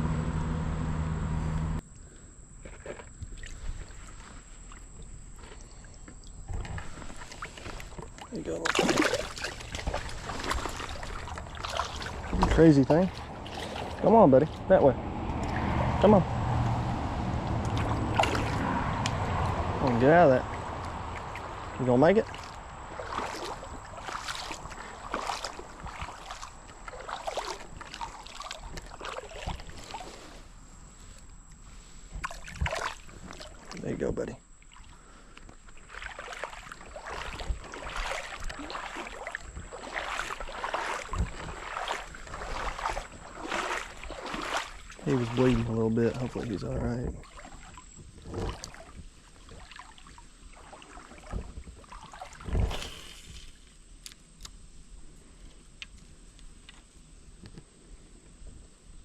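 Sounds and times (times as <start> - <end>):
creek water splashing: 2.6 - 54.3.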